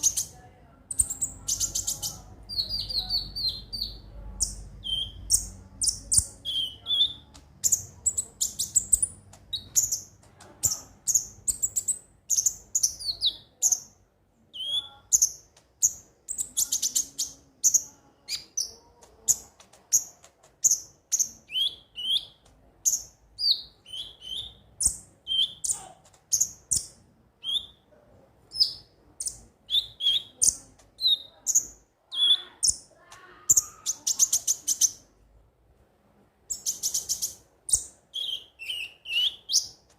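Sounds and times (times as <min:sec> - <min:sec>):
bird singing high chirps and trills: 0:00.0 - 0:27.8, 0:28.5 - 0:35.1, 0:36.5 - 0:39.9.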